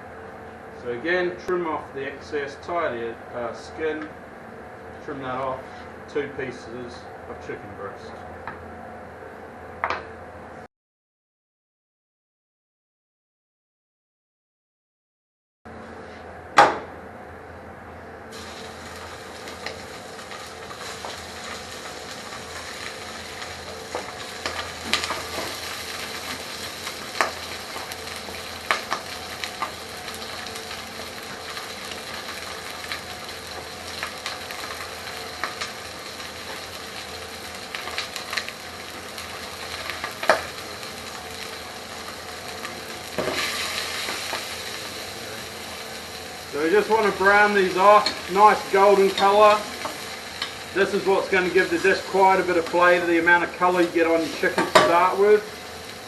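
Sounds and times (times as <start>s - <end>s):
chicken sizzling in a frying pan: 18.3s - 56.0s.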